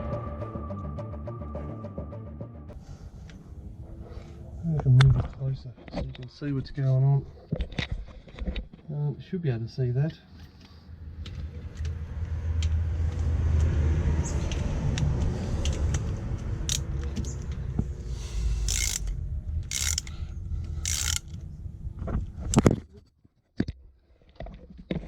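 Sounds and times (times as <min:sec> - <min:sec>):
low rumble of handling noise: 0:10.5 - 0:23.2.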